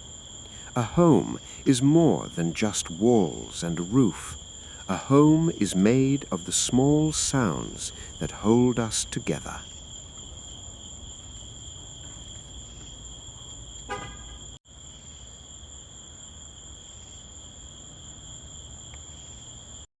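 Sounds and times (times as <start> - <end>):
crickets trilling: 0.0 - 19.9
car horn toot: 13.9 - 14.6.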